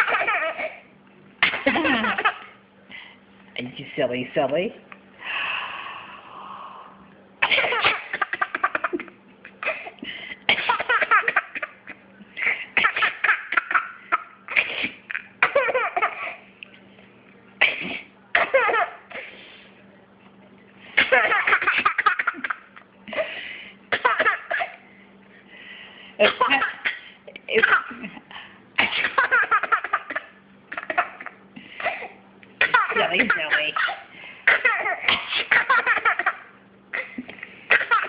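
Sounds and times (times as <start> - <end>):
baby giggling: 0.0 - 0.8, 1.6 - 2.5.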